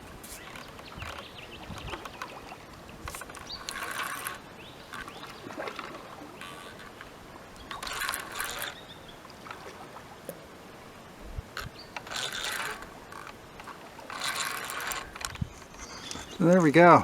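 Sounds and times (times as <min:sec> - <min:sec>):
fishing reel ratcheting: 0:03.1 - 0:07.1, 0:07.7 - 0:08.9, 0:11.6 - 0:16.4.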